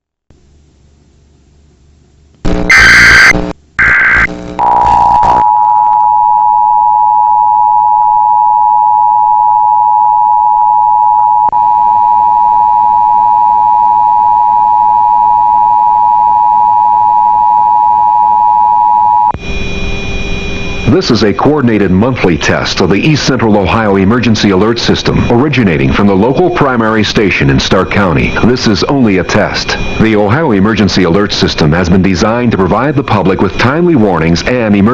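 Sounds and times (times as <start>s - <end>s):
digital data bursts: 2.5s - 5.4s
two-tone attention signal: 2.7s - 21.1s.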